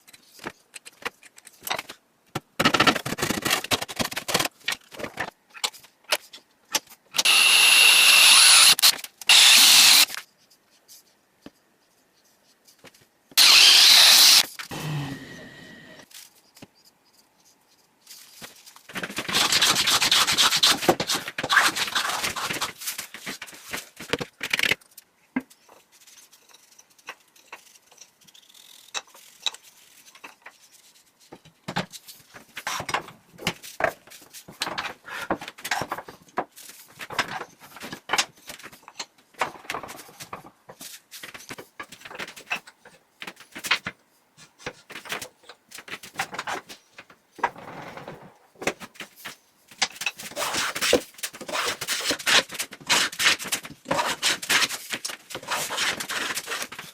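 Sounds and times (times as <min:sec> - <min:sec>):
wood sanded by hand: 0:50.2 - 0:52.2.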